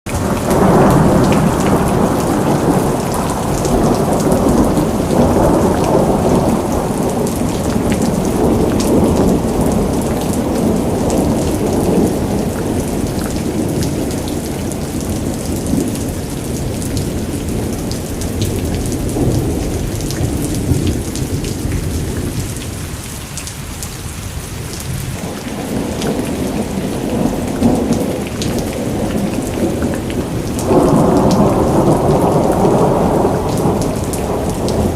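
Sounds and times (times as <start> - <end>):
heavy rain pattering: 0.1 - 34.9.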